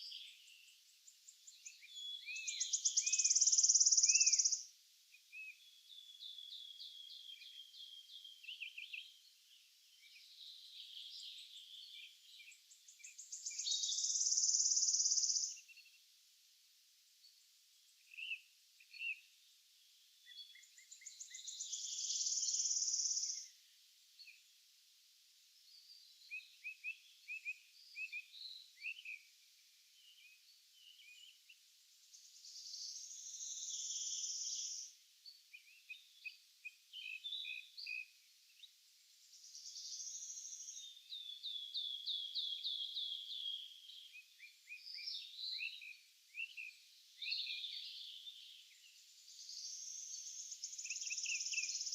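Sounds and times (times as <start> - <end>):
bird chirps: 0.0 - 4.7, 9.9 - 16.0, 20.2 - 23.6, 32.2 - 38.7, 39.3 - 51.9.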